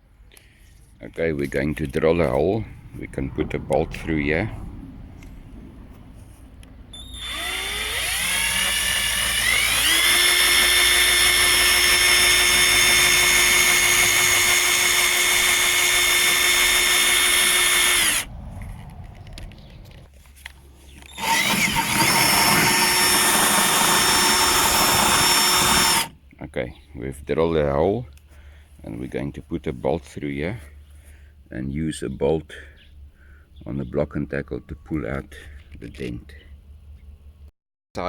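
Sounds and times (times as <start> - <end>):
power drill boring through steel: 7.0 - 18.3, 21.0 - 26.1.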